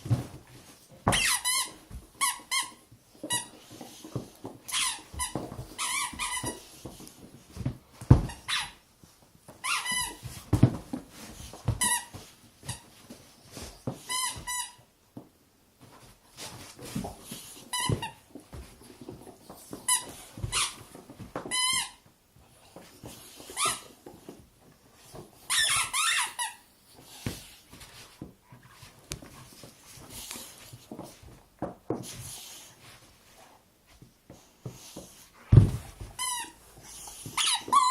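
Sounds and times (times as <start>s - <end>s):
soft knocks and shuffling: 0.0s - 37.9s
rubber toy squeaking: 25.5s - 26.6s, 37.3s - 37.9s.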